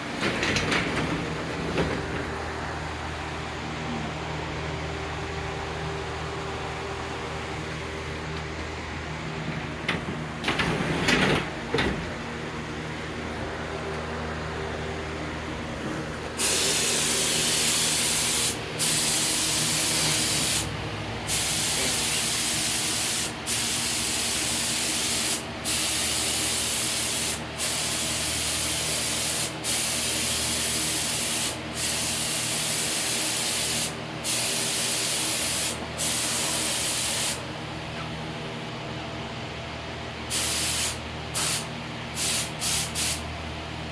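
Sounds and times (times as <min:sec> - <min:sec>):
steady hum: 0:00.0 - 0:43.9
paint spray hissing: 0:16.4 - 0:20.7, 0:21.3 - 0:37.4, 0:40.3 - 0:43.2.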